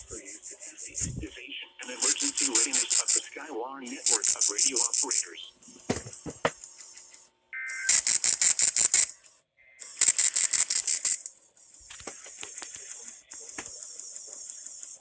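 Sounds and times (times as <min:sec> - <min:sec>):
radio crackling hiss: 0:00.0 - 0:07.1, 0:11.9 - 0:14.0
warbling data tones: 0:00.0 - 0:15.0.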